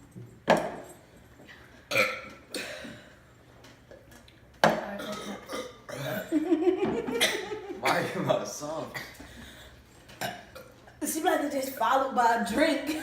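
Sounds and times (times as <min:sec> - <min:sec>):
people burping: 0:01.9 - 0:03.2, 0:04.8 - 0:08.3, 0:10.1 - 0:10.9.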